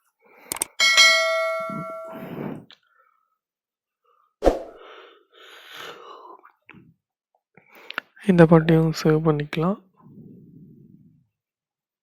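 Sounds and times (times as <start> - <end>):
computer chime: 0.8 - 2.3.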